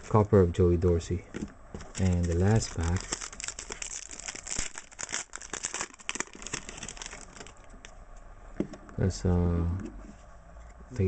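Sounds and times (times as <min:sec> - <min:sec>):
foil wrapper crinkling: 0:01.7 - 0:07.9.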